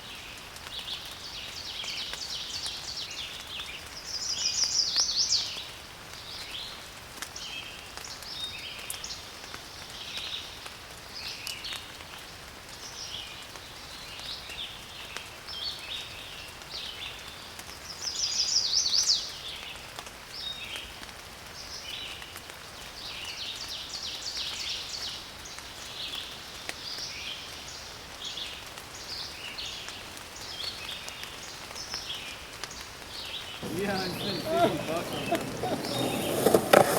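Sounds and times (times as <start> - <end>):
light rain: 0.0 - 36.9
birds singing and chirping: 33.3 - 36.9.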